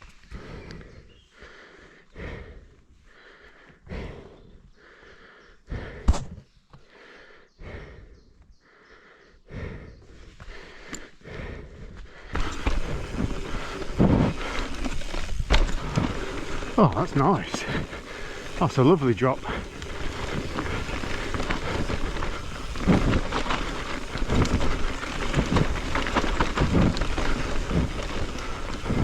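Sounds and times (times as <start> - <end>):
person breathing hard: 0.2 - 29.0
bike tyre noise: 9.6 - 29.0.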